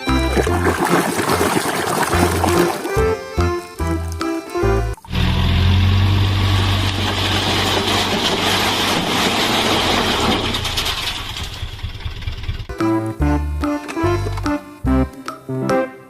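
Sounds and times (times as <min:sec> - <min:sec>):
background music: 0:00.0 - 0:05.4, 0:12.7 - 0:16.0
vehicle engine running: 0:05.1 - 0:12.8.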